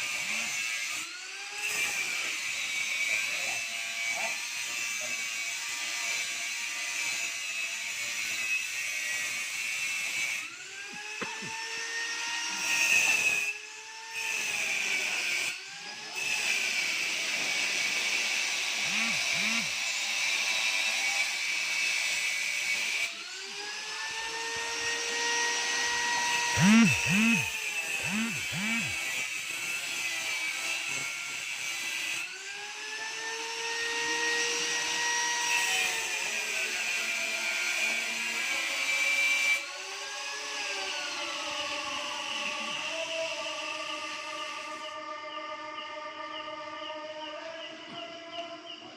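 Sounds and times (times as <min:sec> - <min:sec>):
machine high-pitched whine: 0:10.2 - 0:21.6, 0:22.2 - 0:36.9, 0:39.5 - 0:48.7
machinery whine: 0:18.8 - 0:20.0, 0:23.1 - 0:29.1.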